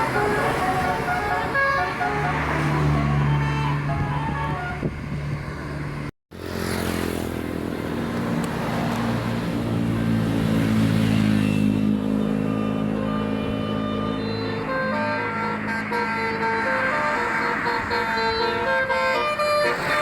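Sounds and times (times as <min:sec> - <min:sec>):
bus engine running: 0:00.0 - 0:06.1, 0:11.2 - 0:20.0.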